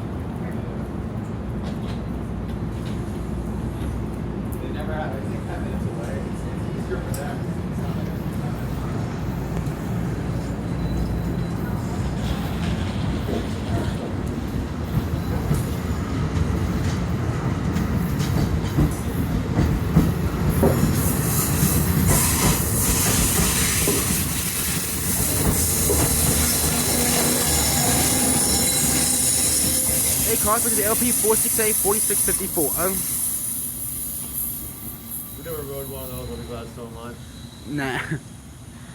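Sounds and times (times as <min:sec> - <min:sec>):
train wheels rumbling on rail: 0:00.0 - 0:37.6
high-pitched wheel squeal: 0:22.1 - 0:37.8.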